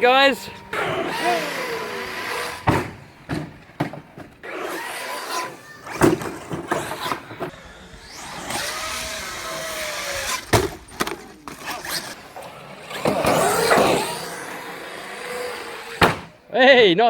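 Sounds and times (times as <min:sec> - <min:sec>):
electric rc car motor whining: 0:00.7 - 0:02.8, 0:04.4 - 0:16.4
toy car hitting the ground: 0:04.8 - 0:07.5, 0:09.6 - 0:12.2, 0:12.9 - 0:16.3.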